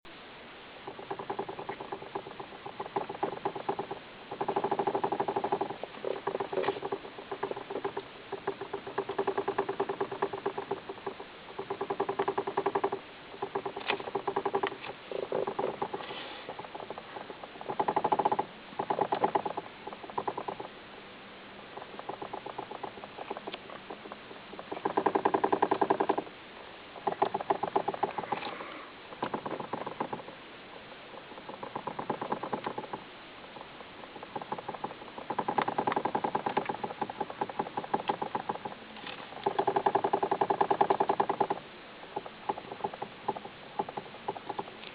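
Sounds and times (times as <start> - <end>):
rapid rattling knock in steering column: 0.9 - 20.7, 21.8 - 26.3, 27.0 - 28.4, 29.2 - 30.2, 31.4 - 33.0, 34.2 - 38.8, 39.4 - 41.6.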